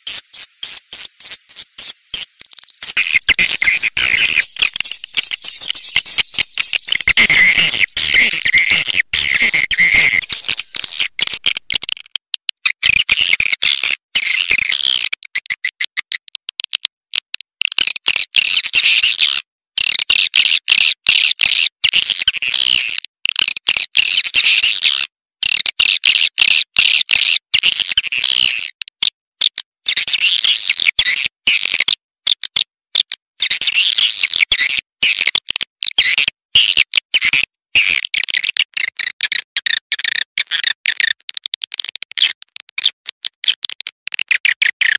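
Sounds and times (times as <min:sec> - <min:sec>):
swiftlets twittering: 0:00.0 - 0:11.9.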